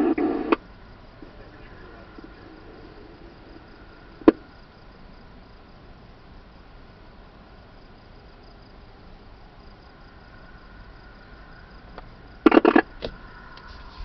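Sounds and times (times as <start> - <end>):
scanner radio transmission: 0.0 - 4.5, 12.4 - 12.9
faint insect chirring: 0.0 - 14.0
faint steady hiss: 0.0 - 14.0
radio click: 12.0 - 13.2.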